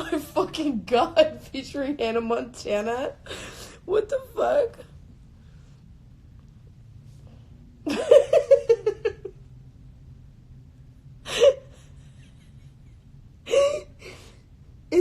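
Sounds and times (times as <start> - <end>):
woman laughing: 7.9 - 9.4, 11.3 - 14.3.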